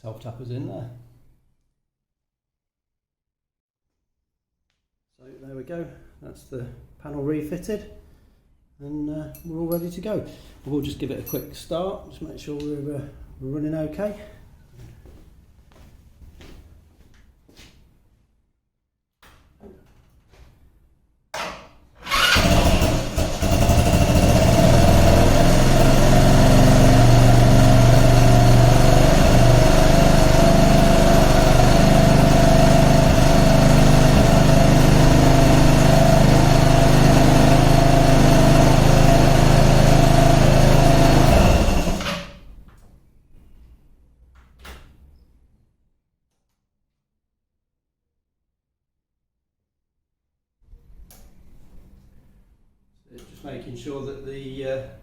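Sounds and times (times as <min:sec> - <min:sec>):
scooter engine starting and idling: 0:21.4 - 0:42.5.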